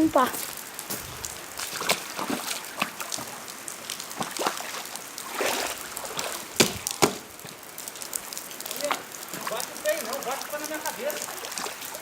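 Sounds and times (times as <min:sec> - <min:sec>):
water sloshing and splashing: 0:00.0 - 0:12.0
sharp knocks: 0:06.6 - 0:07.3.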